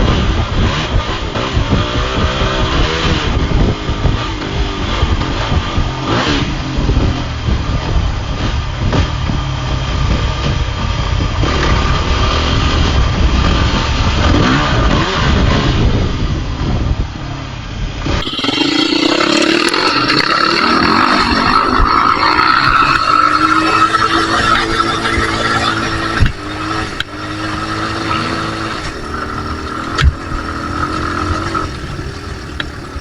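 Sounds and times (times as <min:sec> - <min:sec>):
engine at steady high note: 0:16.2 - 0:33.0
dirt bike engine revving: 0:18.1 - 0:33.0
wind buffeting microphone: 0:19.8 - 0:33.0.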